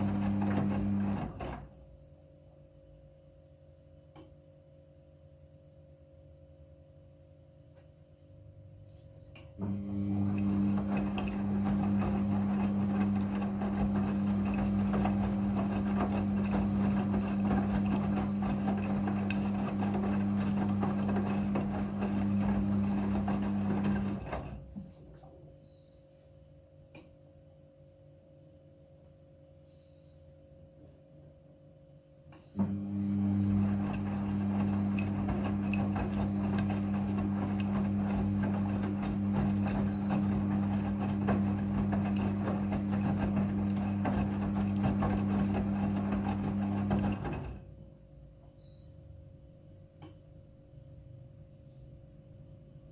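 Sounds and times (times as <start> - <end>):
washing machine drum turning: 10.2 - 24.6, 33.2 - 47.6.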